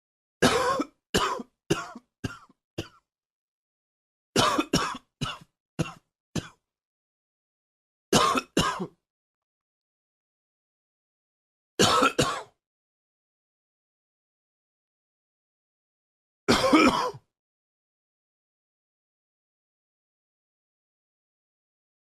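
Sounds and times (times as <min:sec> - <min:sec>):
man coughing: 0:00.4 - 0:03.0, 0:04.4 - 0:06.6, 0:08.2 - 0:08.9, 0:11.8 - 0:12.5, 0:16.5 - 0:17.2.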